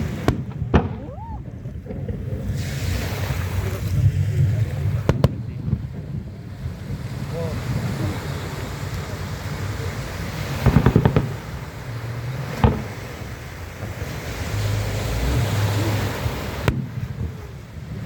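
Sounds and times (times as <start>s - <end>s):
firework bangs: 0.0s - 18.0s
wind noise on microphone: 0.0s - 18.0s.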